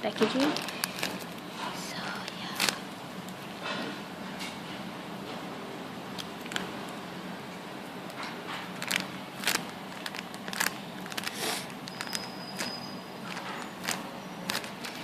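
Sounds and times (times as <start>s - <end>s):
faint steady hum: 0.0s - 15.0s
fingers clicking and rustling on toy: 8.2s - 15.0s.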